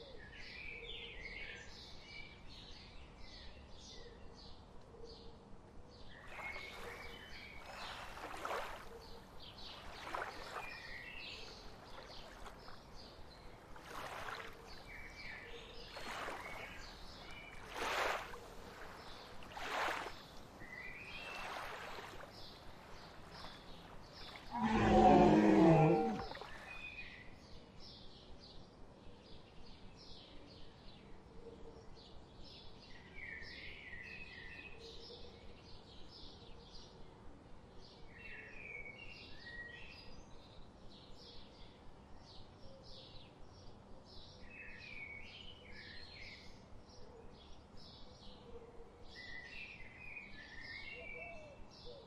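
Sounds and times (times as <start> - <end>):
small birds chirping: 6.0 - 28.6.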